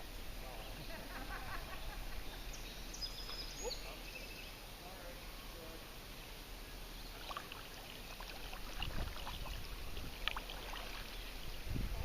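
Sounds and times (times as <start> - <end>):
water dripping: 7.1 - 11.6
kayak paddles splashing water: 7.1 - 11.7.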